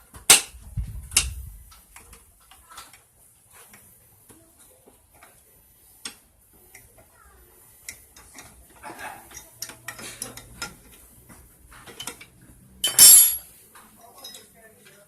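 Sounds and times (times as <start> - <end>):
metal tools clinking and tapping: 11.8 - 15.0.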